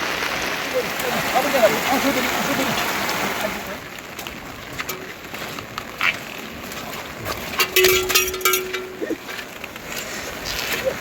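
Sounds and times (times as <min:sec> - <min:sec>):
steady rain: 0:00.0 - 0:11.0
drips and taps: 0:04.1 - 0:09.8.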